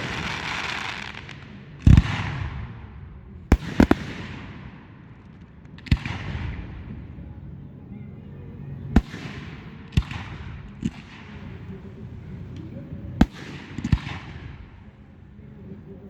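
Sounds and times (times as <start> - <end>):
fireworks hiss: 0.0 - 2.4
fireworks bursting with bangs: 0.0 - 7.2, 9.0 - 12.6, 13.2 - 15.0.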